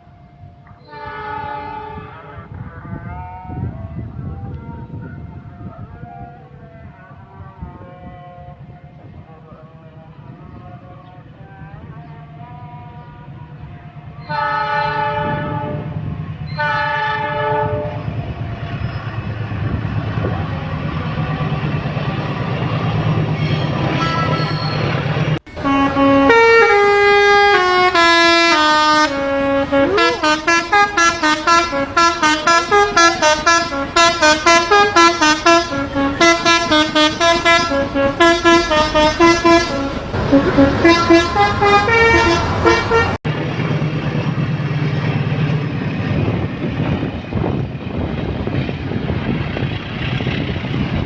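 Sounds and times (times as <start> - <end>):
train rumbling past: 0.0 - 51.0
train horn blasts: 0.8 - 5.4, 7.6 - 8.9, 12.4 - 18.3, 25.5 - 43.2
multi-tone bus horn melody: 0.8 - 9.0, 11.0 - 18.2, 25.4 - 43.2.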